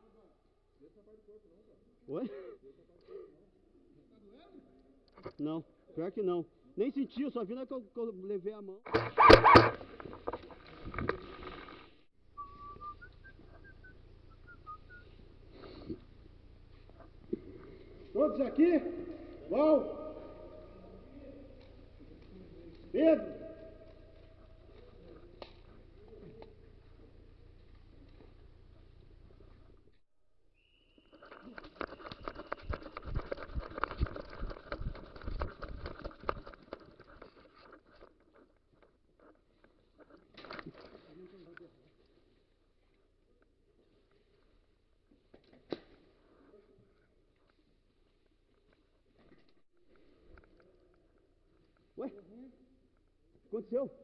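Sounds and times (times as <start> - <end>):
person whistling faintly: 12.3 - 15.9
quick footsteps: 31.1 - 38.9.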